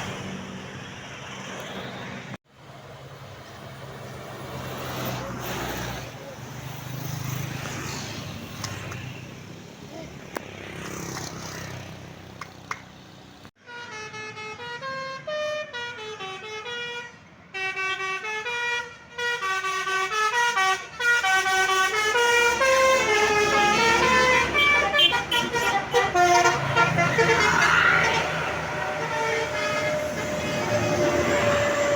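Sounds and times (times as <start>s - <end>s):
traffic rumble: 0.0s - 13.6s, 19.0s - 31.9s
musical bus air horn melody: 13.6s - 31.9s.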